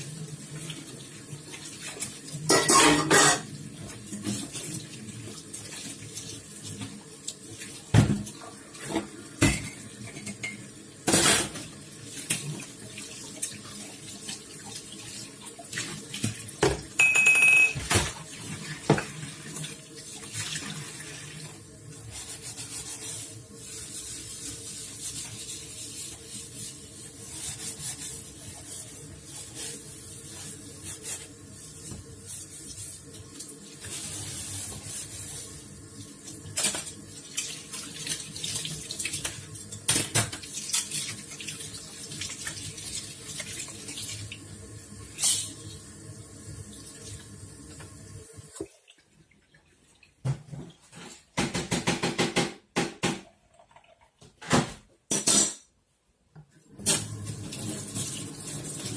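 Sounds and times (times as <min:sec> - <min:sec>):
tap water running into sink: 0:00.0 - 0:17.0, 0:17.8 - 0:22.0, 0:28.4 - 0:48.8, 0:56.8 - 0:58.9
dishes clinking: 0:02.5 - 0:03.5, 0:16.6 - 0:18.1.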